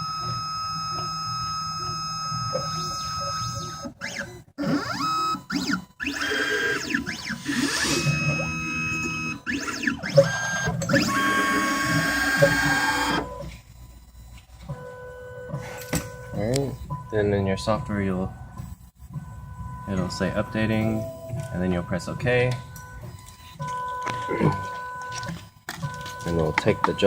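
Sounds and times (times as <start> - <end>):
stepper motors whining: 0.0 - 13.6.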